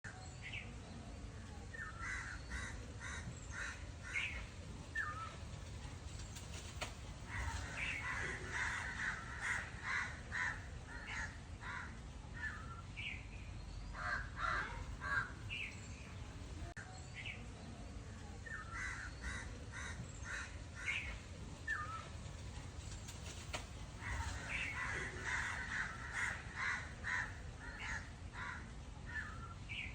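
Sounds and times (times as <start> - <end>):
birds calling harsh notes: 1.7 - 13.2, 18.4 - 29.9.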